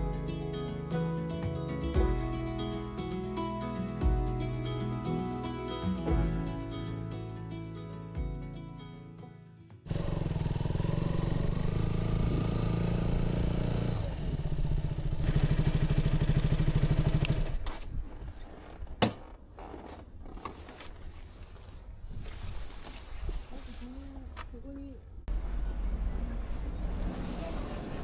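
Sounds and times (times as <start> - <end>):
motorcycle engine running: 9.9 - 17.6.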